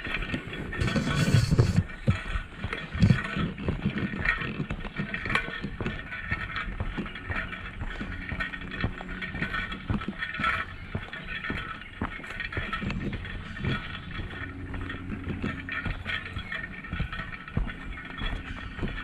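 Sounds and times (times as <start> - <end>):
footsteps crunching on trail: 0.0 - 19.0
loud rustle: 0.6 - 1.8.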